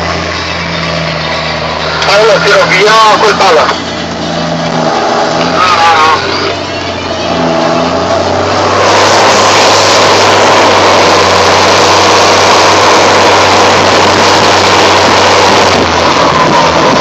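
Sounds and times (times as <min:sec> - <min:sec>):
tractor diesel engine revving: 0:00.0 - 0:17.0
turbo whistle: 0:03.6 - 0:10.0.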